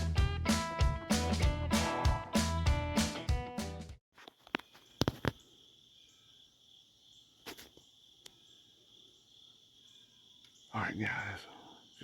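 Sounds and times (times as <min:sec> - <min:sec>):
guitar music: 0:00.0 - 0:03.9
chorus of insects: 0:04.3 - 0:12.0.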